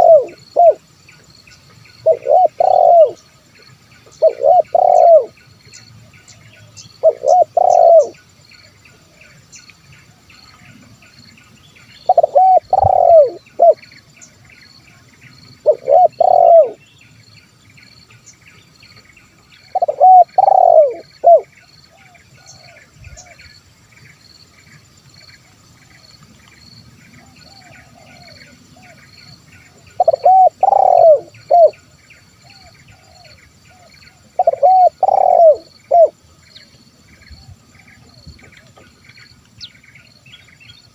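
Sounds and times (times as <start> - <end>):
dove cooing: 0.0 - 0.8, 2.0 - 3.2, 4.2 - 5.4, 6.6 - 8.2, 12.0 - 13.9, 15.6 - 16.8, 19.6 - 23.4, 27.2 - 29.0, 29.7 - 31.8, 32.4 - 36.2
faint chirping: 0.0 - 40.9
faint high hiss: 0.0 - 40.9.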